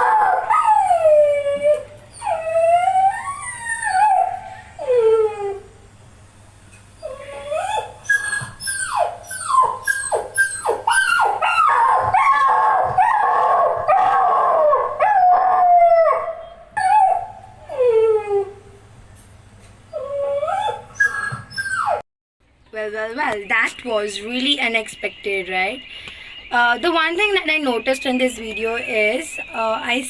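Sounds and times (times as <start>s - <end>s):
dogs howling and yelping: 0.0s - 5.8s, 7.0s - 18.7s, 19.9s - 22.0s.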